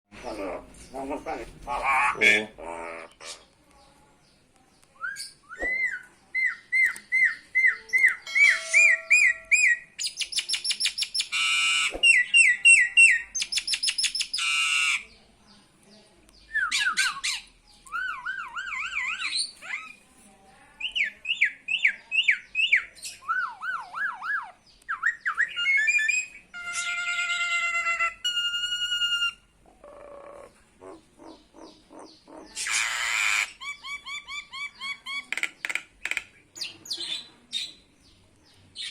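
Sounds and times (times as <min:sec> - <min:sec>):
bird whistles and chirps: 0:05.0 - 0:14.4, 0:21.8 - 0:26.4
bird harsh rasping squawks: 0:08.2 - 0:09.9, 0:11.0 - 0:15.2, 0:25.4 - 0:37.2.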